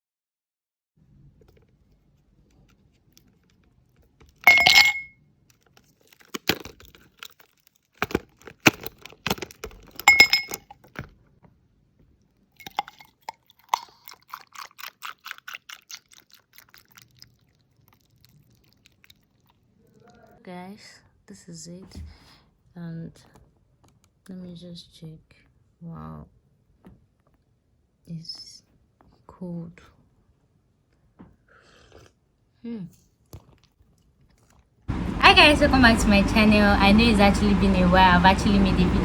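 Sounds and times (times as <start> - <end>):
plastic ice cubes clattering: 4.2 - 11.1, 12.6 - 15.9
plastic ice cubes rattling: 4.2 - 11.1, 12.6 - 16.9.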